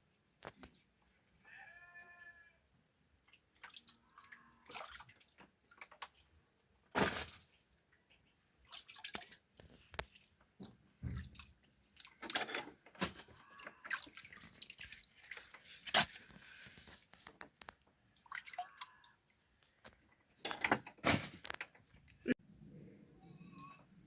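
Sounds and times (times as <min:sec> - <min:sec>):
water sloshing in a basin: 0:03.1 - 0:20.5.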